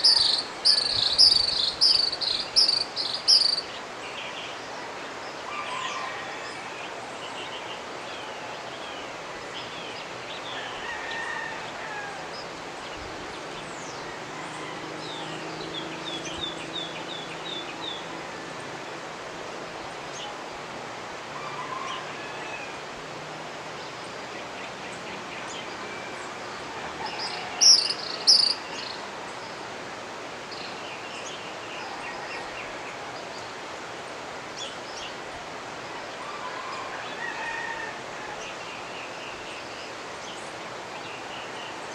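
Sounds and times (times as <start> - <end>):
sharp high bird calls: 0.0 - 3.7, 27.2 - 28.8
birds chirping: 0.0 - 4.0, 23.8 - 29.6
river rushing: 0.0 - 41.9.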